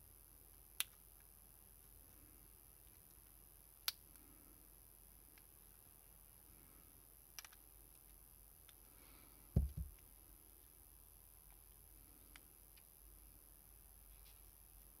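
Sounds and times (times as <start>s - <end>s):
soft dull thump: 9.6s - 9.9s.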